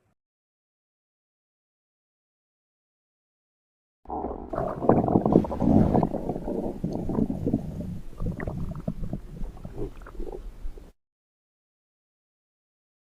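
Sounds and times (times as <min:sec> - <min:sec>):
stomach rumbling and gurgling: 0:04.1 - 0:11.0.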